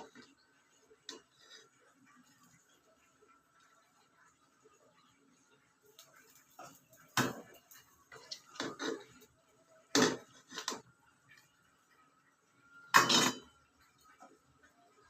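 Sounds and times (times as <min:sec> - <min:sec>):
dishes and utensils clattering: 0:06.6 - 0:09.3, 0:09.9 - 0:10.9, 0:12.9 - 0:13.6.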